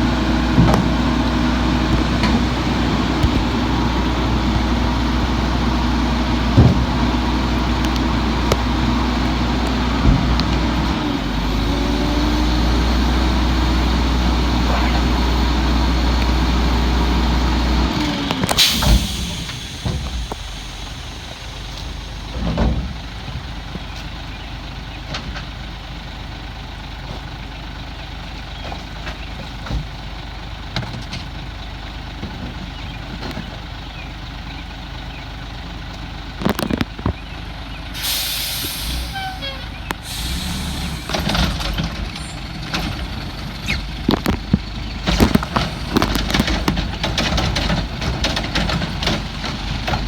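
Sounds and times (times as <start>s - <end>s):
garbage truck engine running: 0.0s - 50.0s
air brake hiss: 18.6s - 22.2s, 38.0s - 41.2s.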